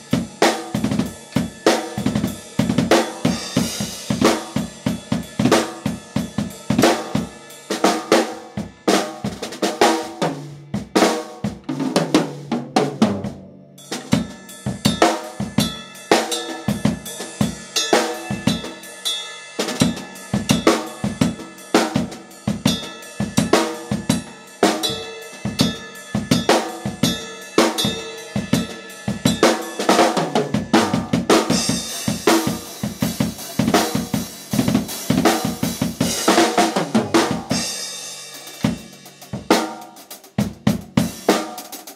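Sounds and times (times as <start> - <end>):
cymbal crashes: 31.4 - 36.6.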